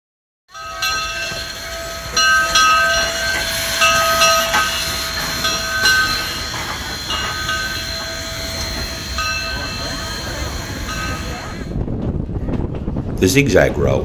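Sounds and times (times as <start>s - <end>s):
high squealing tones: 0.5s - 11.8s
train rumbling on track: 0.5s - 14.0s.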